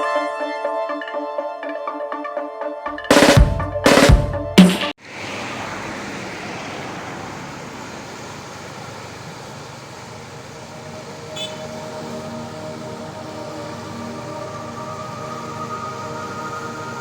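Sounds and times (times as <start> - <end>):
drum hit: 3.1 - 4.9
flood water rushing: 5.0 - 17.0.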